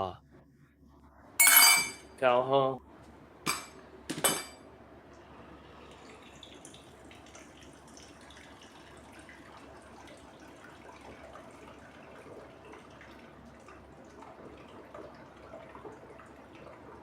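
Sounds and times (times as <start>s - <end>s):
ringing clinks: 1.4s - 2.0s.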